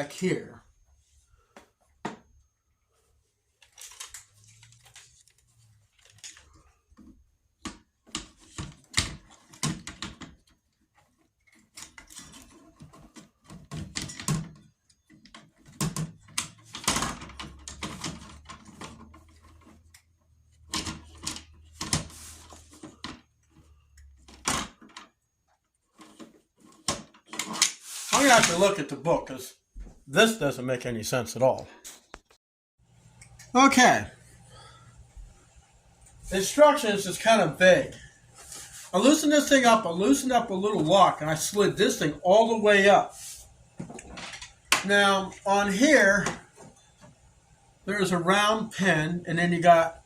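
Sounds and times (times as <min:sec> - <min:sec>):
parts clicking and rattling: 0:03.5 - 0:28.6, 0:43.8 - 0:45.5.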